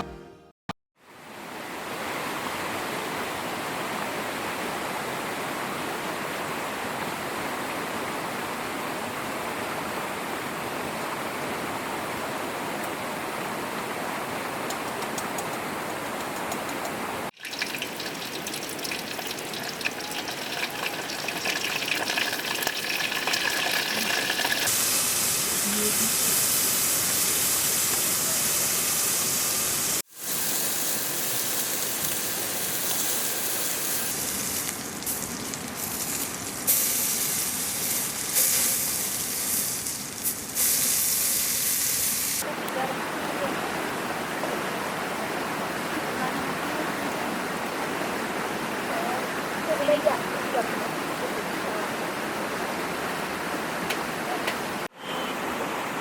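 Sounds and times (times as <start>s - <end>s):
river water rushing: 17.0s - 24.7s, 42.4s - 56.0s.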